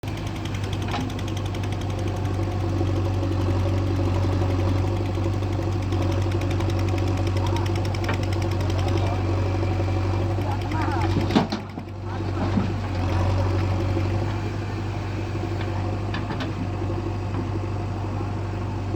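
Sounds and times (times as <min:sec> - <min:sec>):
diesel engine running: 0:00.0 - 0:18.9.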